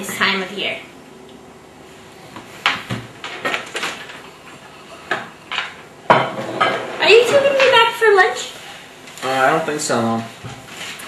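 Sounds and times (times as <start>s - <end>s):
kitchen knocks and clinks: 5.5s - 6.9s.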